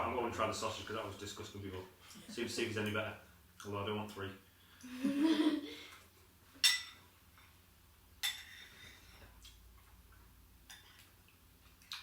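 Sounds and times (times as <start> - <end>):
cutlery clinking against dish: 6.6 - 7.0, 8.2 - 8.8.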